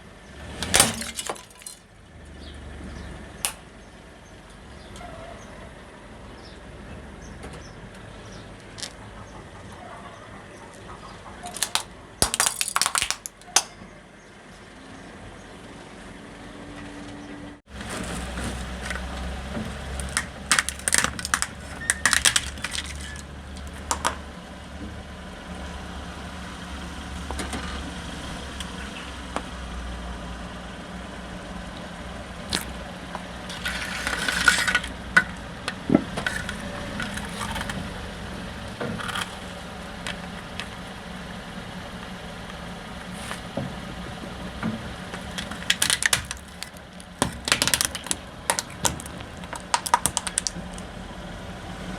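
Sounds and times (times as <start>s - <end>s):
tyres crushing plastic: 0.6s - 1.9s, 11.4s - 13.8s, 17.7s - 24.4s, 31.7s - 51.0s
car engine running: 15.1s - 51.9s.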